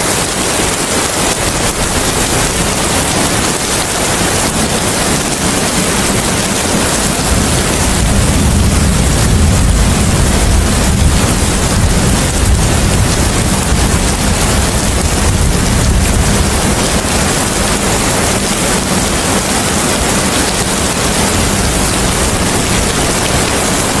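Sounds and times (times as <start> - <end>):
rain: 0.0 - 24.0
wind: 0.0 - 24.0
low rumble: 7.0 - 17.8.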